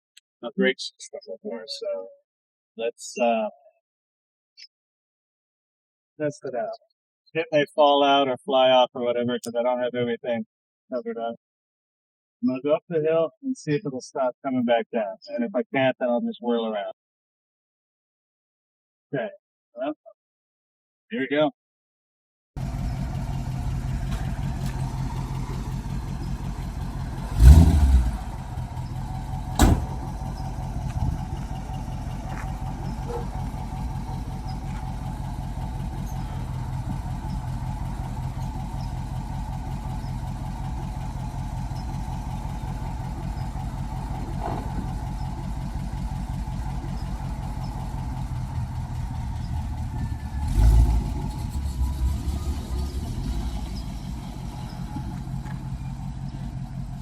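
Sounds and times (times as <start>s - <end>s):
truck engine running: 22.6s - 57.0s
loud low thump: 29.5s - 30.2s
sharp knock: 29.6s - 29.9s.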